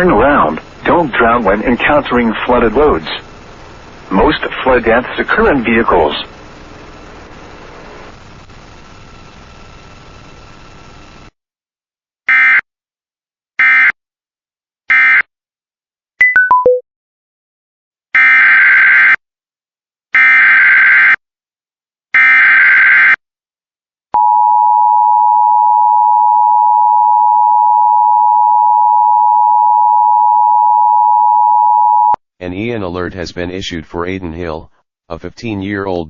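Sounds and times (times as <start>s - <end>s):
quick descending beeps: 16.2s - 16.8s.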